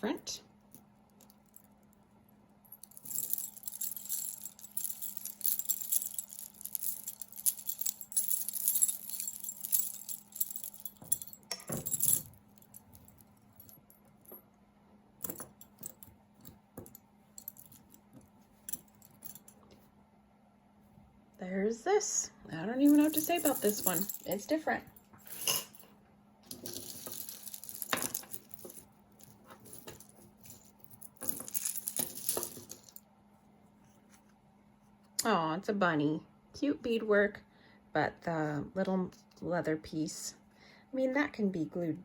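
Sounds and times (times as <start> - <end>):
jewelry clinking and jingling: 0.0 - 14.6, 15.2 - 19.7, 22.7 - 33.0
faint steady hum: 0.0 - 42.0.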